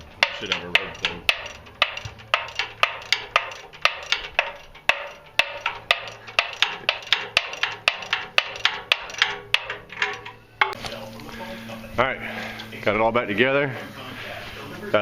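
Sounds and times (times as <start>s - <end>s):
hand tool clicking on metal: 0.1s - 10.8s.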